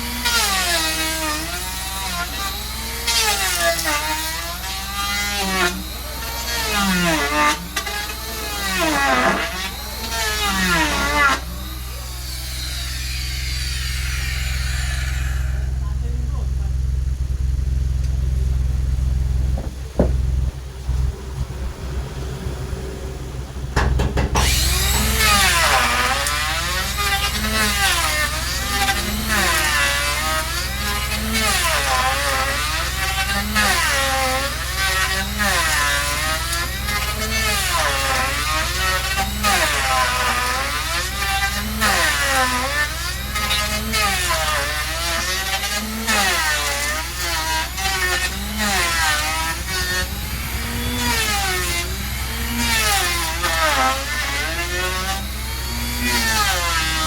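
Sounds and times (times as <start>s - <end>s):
saw cutting wood: 0.0s - 17.3s, 18.0s - 21.2s, 22.3s - 57.0s
low engine hum: 11.5s - 39.5s, 42.8s - 57.0s.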